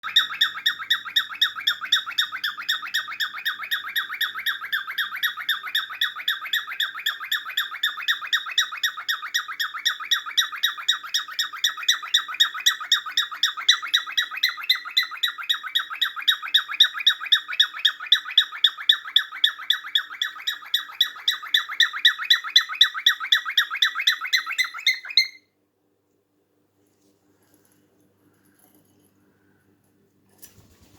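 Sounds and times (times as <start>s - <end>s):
cockatiel calling: 0.0s - 25.4s.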